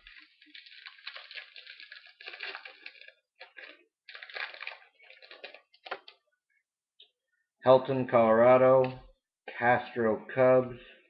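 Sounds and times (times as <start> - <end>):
cards and foil wrappers crinkling: 0.0 - 6.2.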